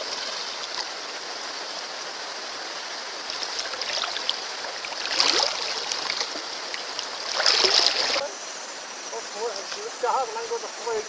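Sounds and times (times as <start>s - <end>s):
flowing stream water: 0.0s - 11.0s
splash in water: 3.3s - 6.4s, 7.2s - 8.3s.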